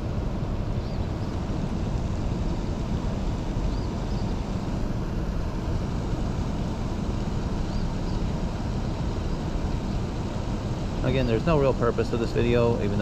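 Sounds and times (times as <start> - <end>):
faint bird chirps: 3.7 - 4.4.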